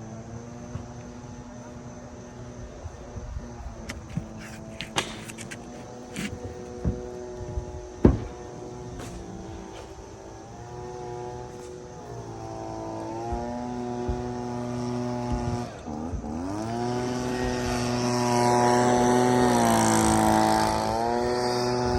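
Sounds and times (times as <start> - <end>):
motor running: 8.8 - 21.9.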